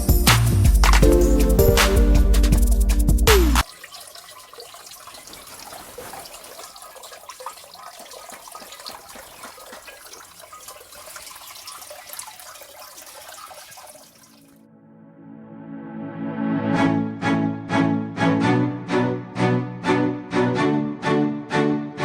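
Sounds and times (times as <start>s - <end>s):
background music: 0.0s - 3.6s, 14.7s - 22.0s
water trickling and splashing: 3.6s - 14.6s.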